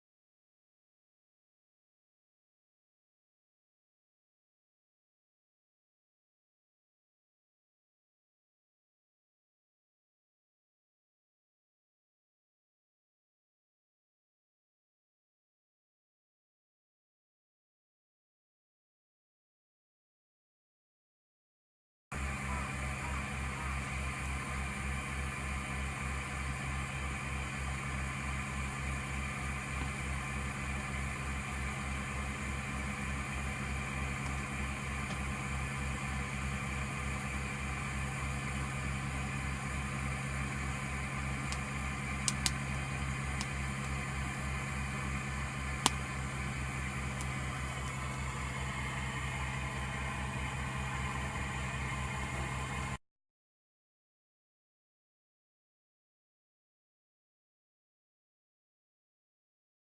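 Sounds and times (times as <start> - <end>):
machine throbbing and humming: 22.2 - 53.0
sharp clicks: 42.3 - 42.6.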